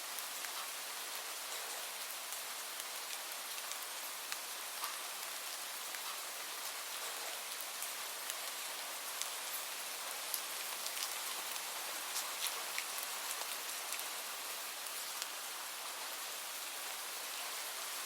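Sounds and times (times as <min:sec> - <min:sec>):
light rain falling: 0:00.0 - 0:18.0
raindrops ticking: 0:02.2 - 0:14.2.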